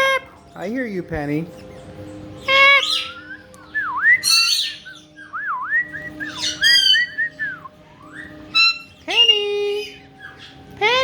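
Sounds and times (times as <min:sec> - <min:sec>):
parrots squawking shrilly: 0:00.0 - 0:00.5, 0:02.4 - 0:03.4, 0:04.2 - 0:05.4, 0:06.3 - 0:07.2, 0:08.0 - 0:09.1.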